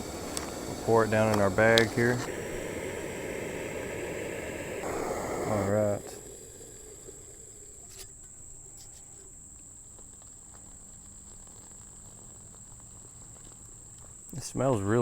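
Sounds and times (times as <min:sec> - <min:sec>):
faint handling clicks: 0:00.0 - 0:02.3
insects droning: 0:00.0 - 0:15.0.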